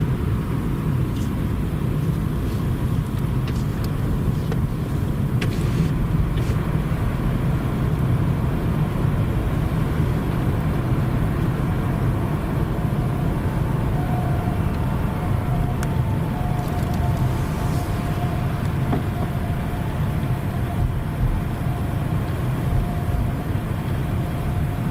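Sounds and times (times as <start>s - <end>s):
road traffic rumble: 0.0s - 24.9s
faint two-tone ambulance siren: 9.7s - 24.9s.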